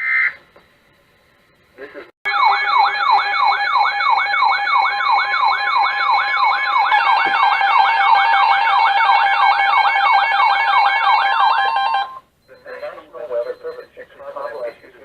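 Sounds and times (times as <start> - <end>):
siren yelp: 2.3 - 12.2
steady alarm tones: 2.3 - 15.0
warbling alarm tone: 2.3 - 15.0.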